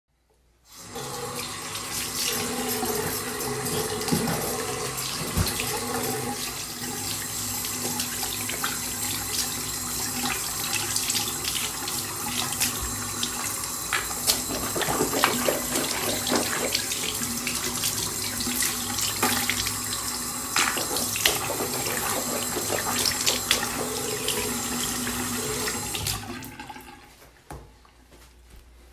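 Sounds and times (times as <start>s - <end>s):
tap water running into sink: 0.8s - 27.1s
water splashing: 7.9s - 27.0s.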